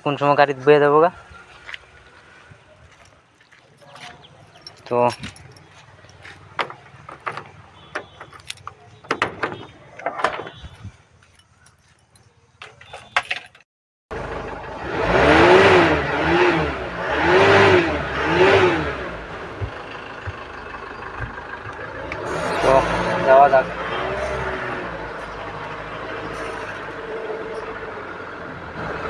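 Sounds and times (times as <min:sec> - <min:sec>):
light clicks and knocks: 0:03.4 - 0:13.6
vehicle engine revving and idling: 0:14.1 - 0:29.0.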